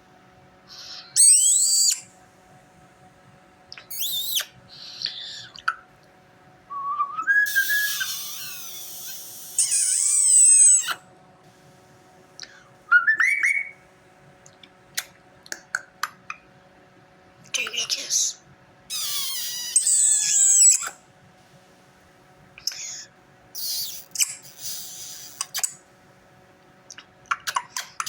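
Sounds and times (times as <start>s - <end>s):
starling singing: 0.8s - 2.1s, 3.9s - 5.3s, 7.2s - 11.0s, 12.9s - 13.8s.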